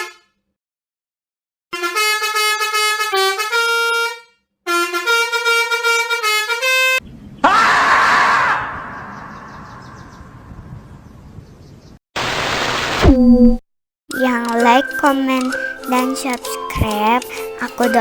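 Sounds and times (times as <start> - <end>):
multi-tone bus horn melody: 0.0 - 0.2, 1.8 - 7.0
loud rushing noise: 12.2 - 13.2.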